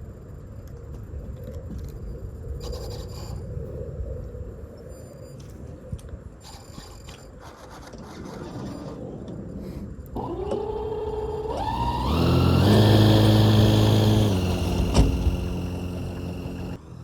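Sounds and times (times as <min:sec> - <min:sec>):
model plane motor whining: 0:10.1 - 0:16.8.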